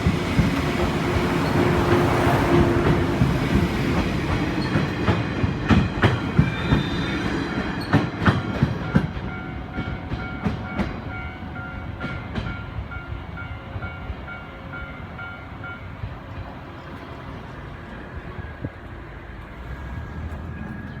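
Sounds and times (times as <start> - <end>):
train wheels clacking over rail joints: 0.0 - 11.3
electric train rumbling: 0.0 - 21.0
level-crossing warning bell: 7.8 - 16.5.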